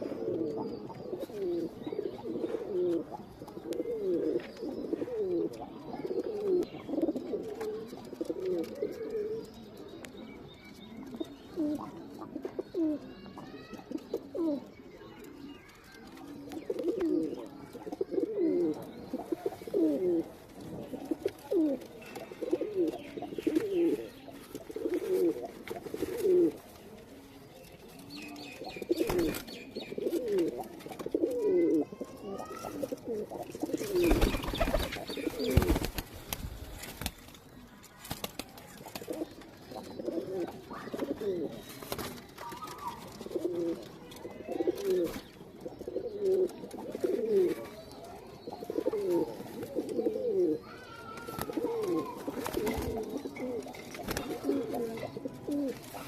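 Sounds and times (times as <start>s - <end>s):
pigeons cooing: 0.0s - 37.2s, 38.8s - 56.0s
rustling noise: 32.8s - 39.2s.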